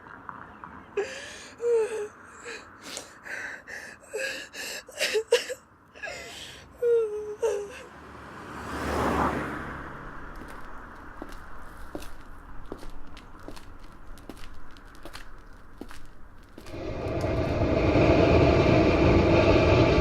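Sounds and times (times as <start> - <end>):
person gasping and whimpering: 1.0 - 7.9
rushing noise: 16.5 - 20.0.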